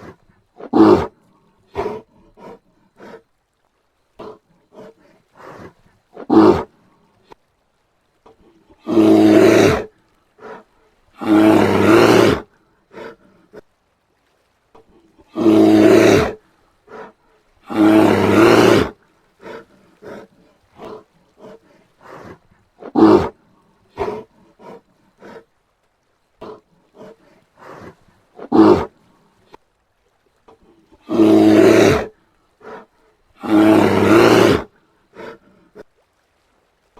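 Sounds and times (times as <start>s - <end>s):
bear roaring: 0.0s - 3.2s, 4.2s - 6.7s, 8.7s - 13.6s, 15.2s - 25.5s, 26.4s - 29.0s, 30.9s - 35.8s
bear huffs and grunts: 0.0s - 3.3s, 4.2s - 7.4s, 8.3s - 13.7s, 14.8s - 25.6s, 26.4s - 29.6s, 30.5s - 35.9s.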